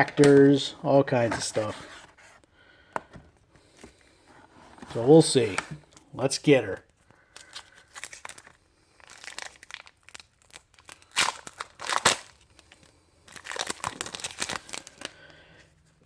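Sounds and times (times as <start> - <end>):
wrapper crinkling and tearing: 7.3 - 15.3.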